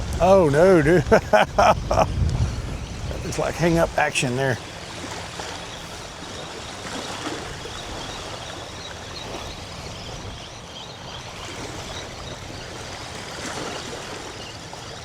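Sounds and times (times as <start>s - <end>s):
wind buffeting microphone: 0.0s - 6.3s
small waves washing on shore: 0.0s - 15.0s.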